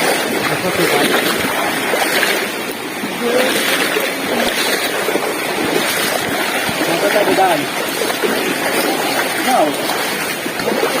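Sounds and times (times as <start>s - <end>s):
mountain stream rushing: 0.0s - 11.0s
faint voices: 3.0s - 11.0s.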